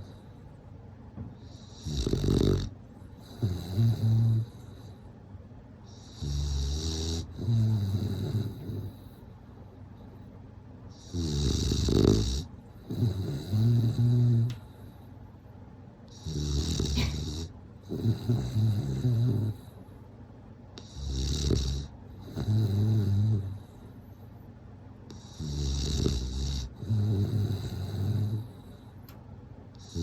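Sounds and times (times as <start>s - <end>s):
dog snoring: 1.4s - 5.1s, 5.9s - 9.3s, 11.0s - 15.1s, 16.1s - 19.9s, 20.8s - 24.2s, 25.1s - 29.0s, 29.8s - 30.0s.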